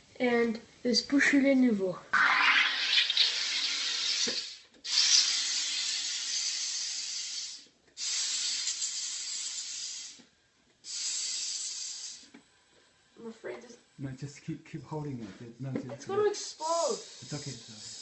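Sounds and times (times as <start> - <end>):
carbonation machine hissing: 2.2 - 12.8, 16.4 - 18.0.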